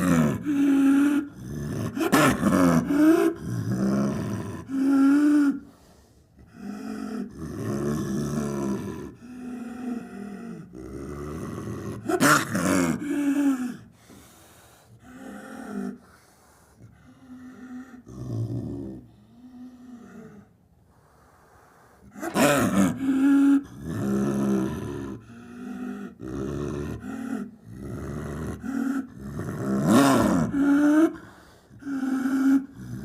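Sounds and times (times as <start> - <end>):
snow leopard growling and roaring: 0.0 - 5.6, 6.5 - 13.8, 22.1 - 33.0.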